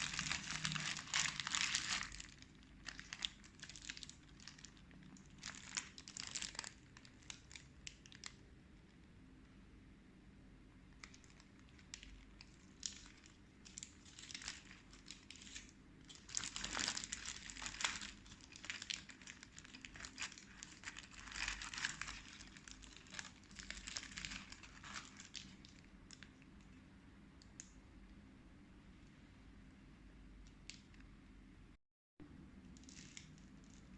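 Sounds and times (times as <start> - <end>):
paper wrapping crinkling: 0.0 - 8.4, 11.0 - 26.4.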